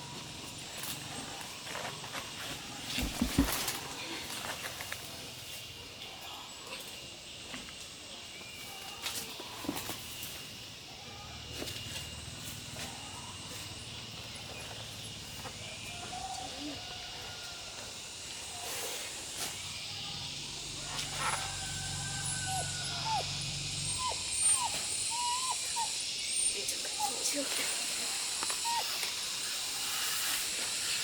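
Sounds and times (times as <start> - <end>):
high-pitched insect drone: 8.6 - 31.0
animal chirps and calls: 19.9 - 31.0.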